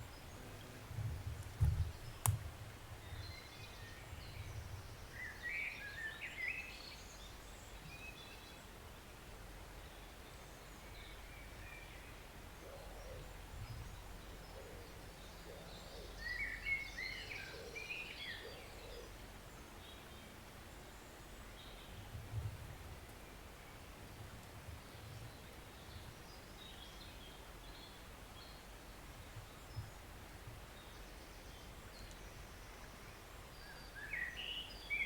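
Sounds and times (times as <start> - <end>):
songbird chirping: 30.7 - 35.0.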